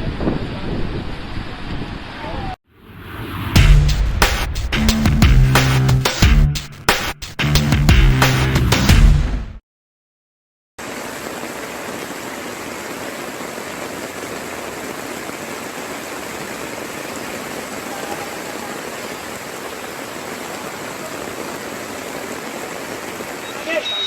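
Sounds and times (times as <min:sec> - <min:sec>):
water rushing: 0:10.8 - 0:24.0.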